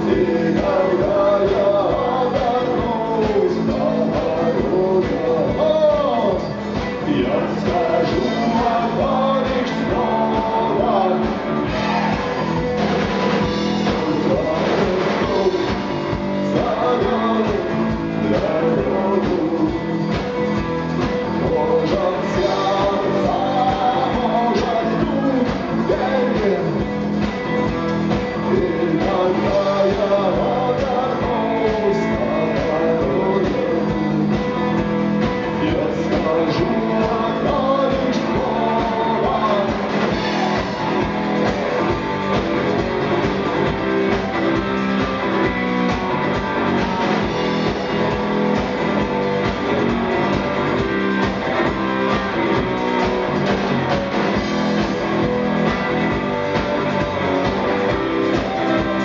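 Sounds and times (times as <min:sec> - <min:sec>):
live rock band playing: 0:00.0 - 0:59.0.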